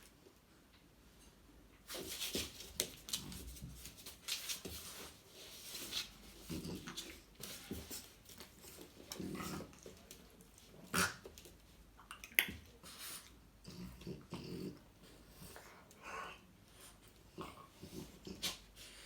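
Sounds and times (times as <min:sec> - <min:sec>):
dogs growling: 0:13.6 - 0:16.4.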